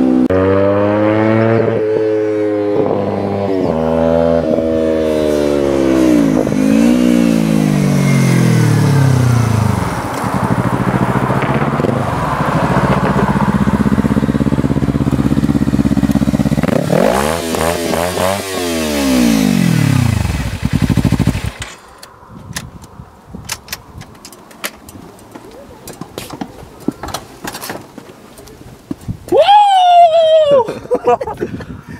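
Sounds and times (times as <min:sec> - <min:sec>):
motorcycle engines passing: 0:00.0 - 0:22.0.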